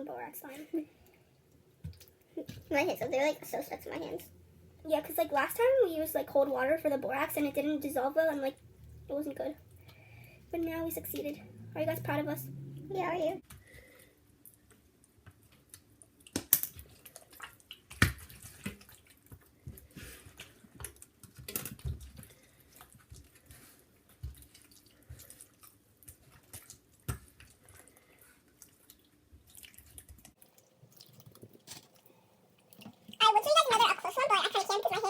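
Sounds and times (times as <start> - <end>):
slime squelching: 14.5 - 35.0.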